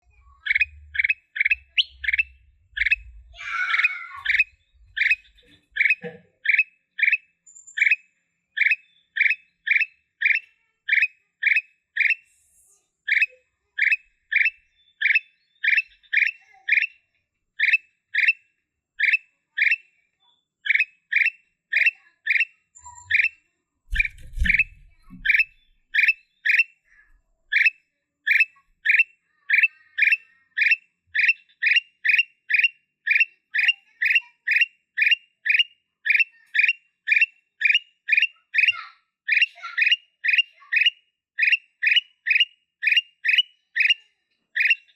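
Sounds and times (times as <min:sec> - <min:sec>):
brief rustle: 0:23.9 - 0:25.3
bird calling sharp notes: 0:23.9 - 0:26.6.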